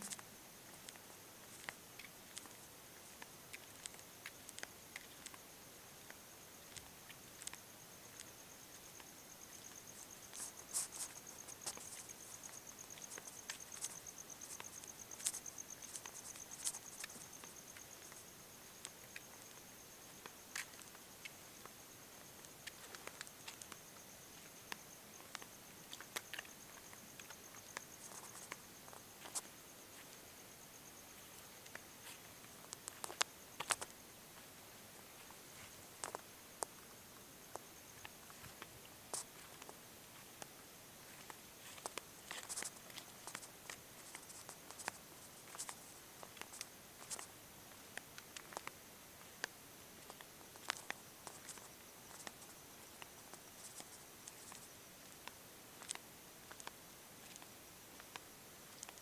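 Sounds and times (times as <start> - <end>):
soft clicks and ticks: 0.0 - 5.4, 31.3 - 34.0, 47.9 - 59.0
small clicks and ticks: 0.0 - 34.5, 35.2 - 59.0
high-pitched insect trill: 0.0 - 59.0
low hiss: 0.0 - 59.0.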